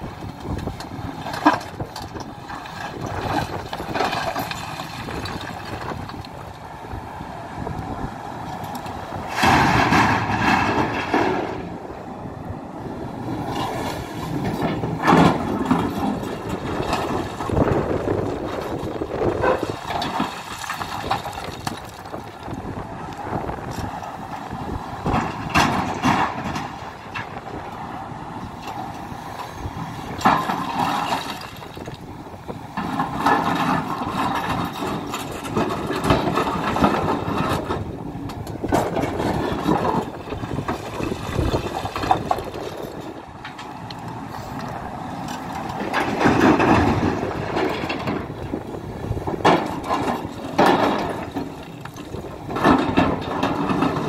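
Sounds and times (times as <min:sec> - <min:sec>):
excavator diesel engine working: 0:00.0 - 0:54.0.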